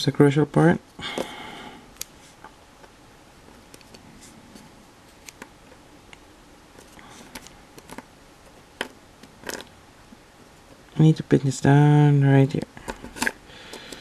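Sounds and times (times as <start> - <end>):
plastic parts clicking and tapping: 12.5 - 14.0.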